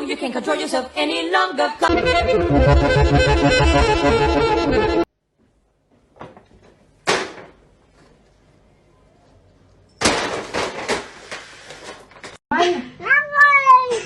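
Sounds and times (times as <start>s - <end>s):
music: 1.8s - 5.1s
loud sudden sound: 1.9s - 5.1s.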